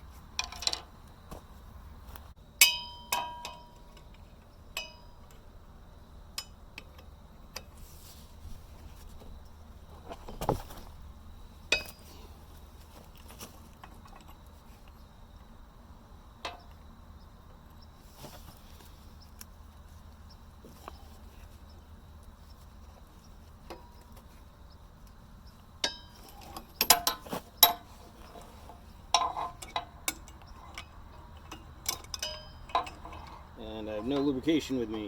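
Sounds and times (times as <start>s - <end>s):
metal tools clinking: 11.7s - 12.2s, 25.8s - 35.0s.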